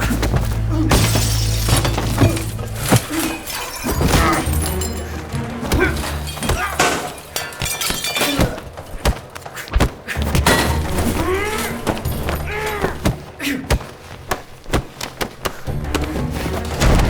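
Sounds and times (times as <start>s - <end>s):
hard hits and thuds: 0.0s - 3.3s
glass breaking: 0.9s - 8.9s, 10.4s - 11.1s.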